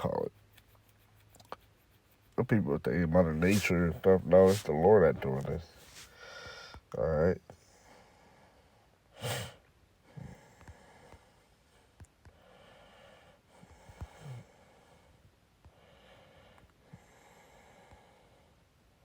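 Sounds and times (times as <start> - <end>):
soft hissing breaths: 2.2 - 19.0.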